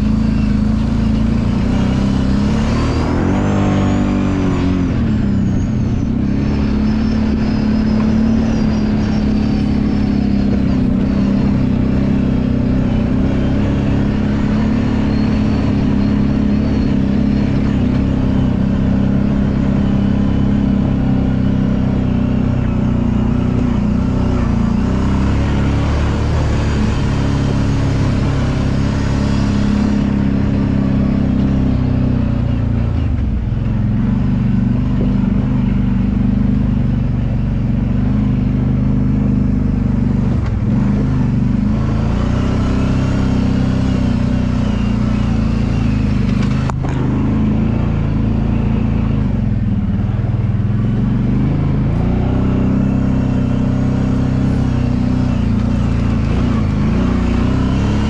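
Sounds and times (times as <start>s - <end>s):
atv engine running: 0.0s - 58.0s.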